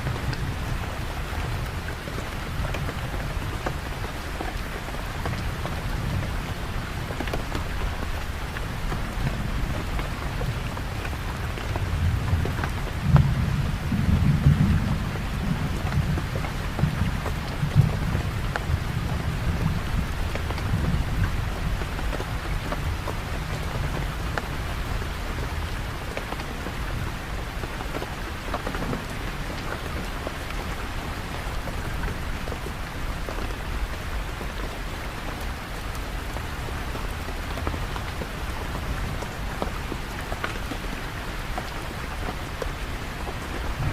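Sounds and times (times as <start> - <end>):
steady rain falling: 0.0 - 43.9
rolling thunder rumble: 43.7 - 43.9.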